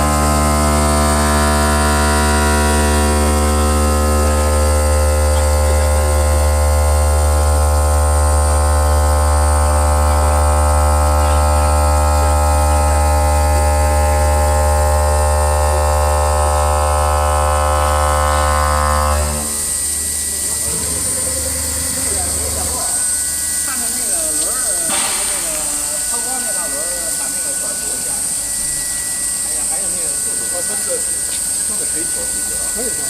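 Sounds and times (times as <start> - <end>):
spindle motor electric hum: 0.0 - 33.0.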